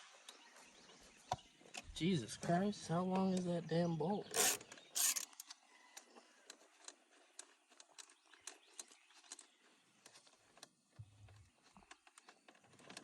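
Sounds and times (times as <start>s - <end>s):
hand tool clicks: 4.3s - 5.4s.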